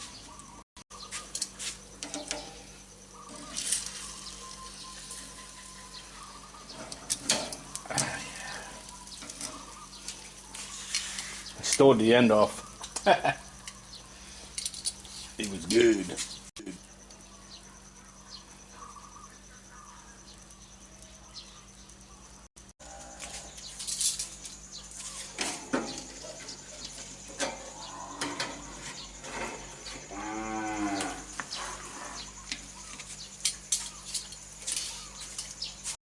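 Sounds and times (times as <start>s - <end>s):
cow mooing: 30.1s - 32.2s.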